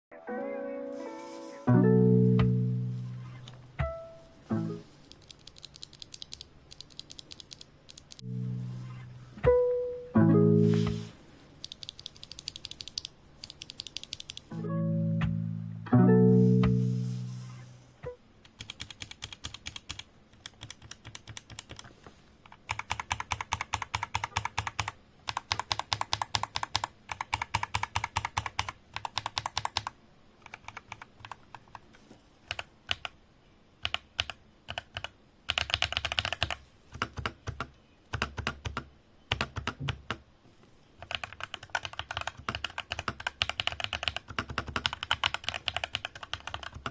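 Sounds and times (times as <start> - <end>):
typing on mechanical keyboard: 5.1 - 8.3, 11.6 - 14.5, 18.4 - 33.2, 33.8 - 40.2, 41.0 - 46.9.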